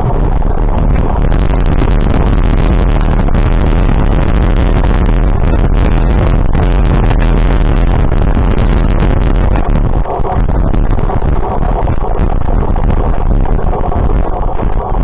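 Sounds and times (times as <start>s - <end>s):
vehicle engine driving: 0.0s - 15.0s
wind noise: 0.0s - 15.0s.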